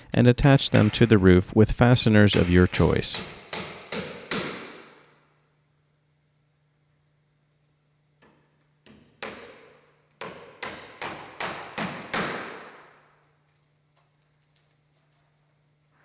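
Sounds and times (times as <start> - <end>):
hammer driving a nail: 0.6 - 1.4, 2.3 - 4.9, 8.9 - 12.8.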